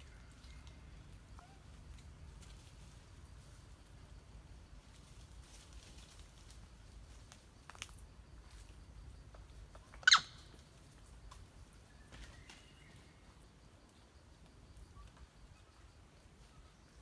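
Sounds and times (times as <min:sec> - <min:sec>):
monkey squeaking: 0:10.0 - 0:10.3.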